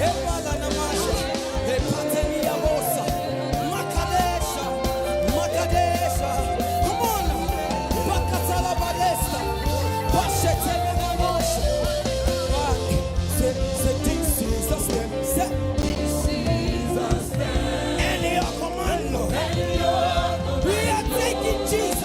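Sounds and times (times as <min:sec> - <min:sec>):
bass: 0:00.0 - 0:22.0
group singing gospel: 0:00.0 - 0:22.0
steady drumbeat: 0:15.8 - 0:22.0.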